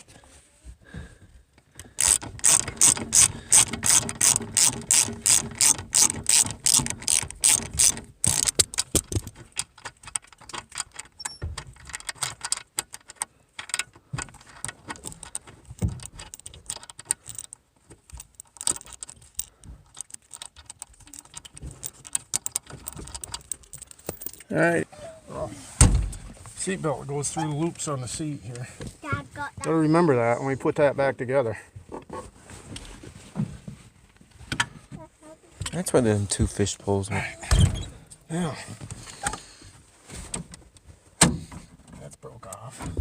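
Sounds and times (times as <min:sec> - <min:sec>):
ratchet wrench clicking: 0:02.0 - 0:09.0.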